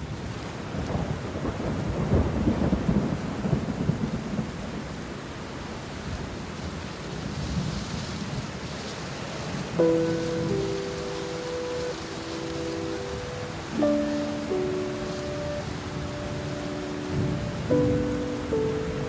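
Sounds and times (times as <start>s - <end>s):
rain falling: 0.0s - 19.0s
rolling thunder: 0.7s - 5.0s, 9.6s - 19.0s.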